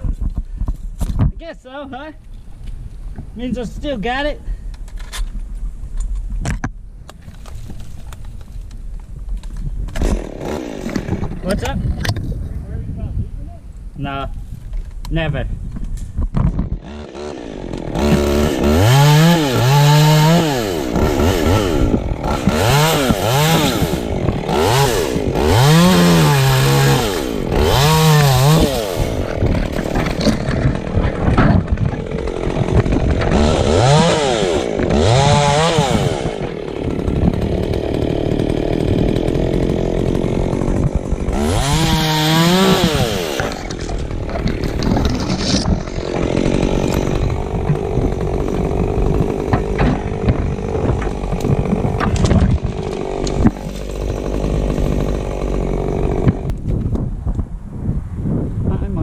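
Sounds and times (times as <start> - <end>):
chainsaw revving while cutting wood: 10.0 - 11.4, 16.8 - 56.6.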